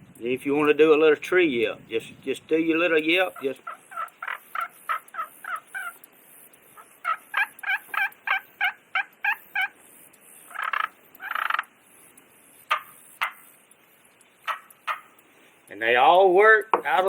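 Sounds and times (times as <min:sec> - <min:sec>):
turkey call clucks: 0:02.9 - 0:15.5
turkey call yelps: 0:03.1 - 0:11.8, 0:12.6 - 0:13.6, 0:14.4 - 0:15.2.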